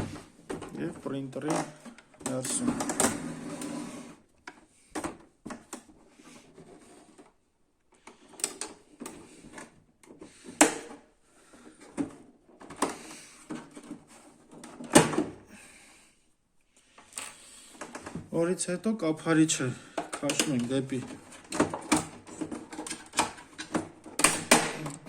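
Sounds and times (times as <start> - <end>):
plastic scraping and handling: 0.0 - 7.4, 8.0 - 15.4, 19.5 - 25.0
plastic latches clicking and snapping: 8.0 - 11.0, 19.9 - 25.0.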